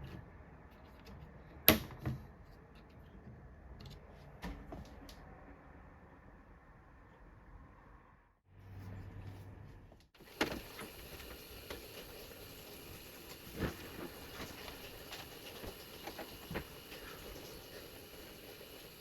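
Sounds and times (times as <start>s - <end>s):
steady hiss: 10.2s - 19.0s.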